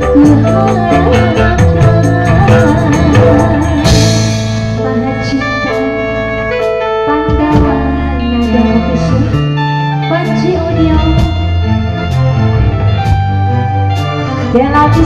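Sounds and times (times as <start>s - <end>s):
drum strikes: 0.0s - 5.0s
bass line: 0.0s - 15.0s
guitar-like melody: 0.0s - 15.0s.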